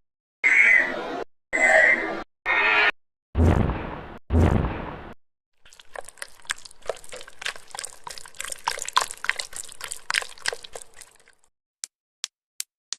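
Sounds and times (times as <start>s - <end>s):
rapid irregular clicks and crackles: 5.6s - 11.5s.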